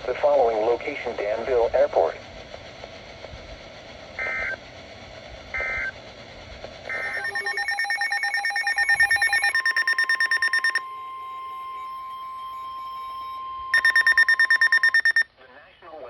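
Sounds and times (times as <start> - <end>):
buzzy digital data bursts: 6.9 - 15.2
pulsed electronic alarm beeping: 6.9 - 15.3
steady single-pitch warning tone: 6.9 - 15.3.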